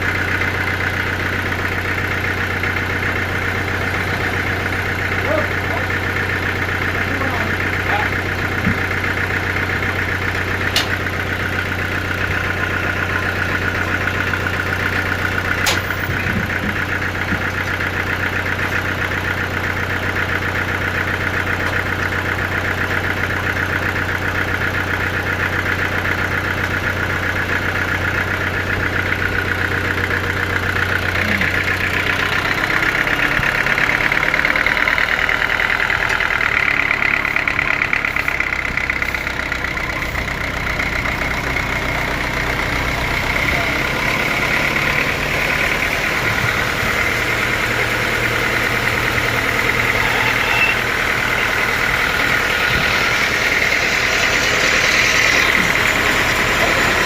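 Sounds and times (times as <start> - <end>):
sawmill low hum: 0.0 - 57.0
machinery buzzing tone: 48.9 - 57.0.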